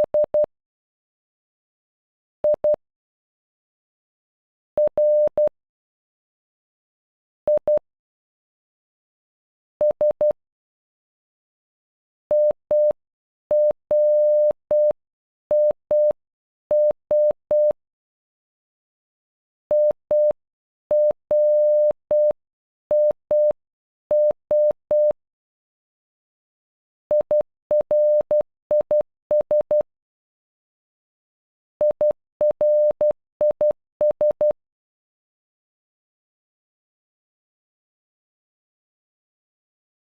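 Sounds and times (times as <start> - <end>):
morse code beeps: 4.8 - 5.5, 27.1 - 29.8, 31.8 - 34.6.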